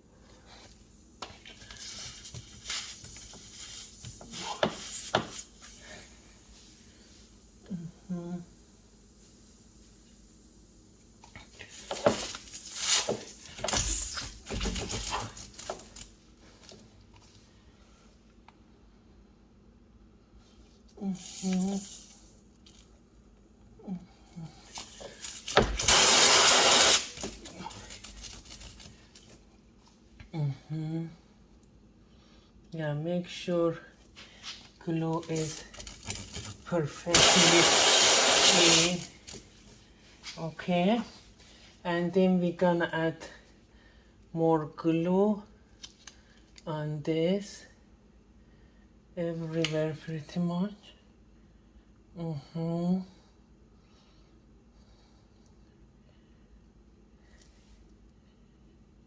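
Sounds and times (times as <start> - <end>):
air hissing from tire: 24.6 - 27.3, 37.1 - 39.1.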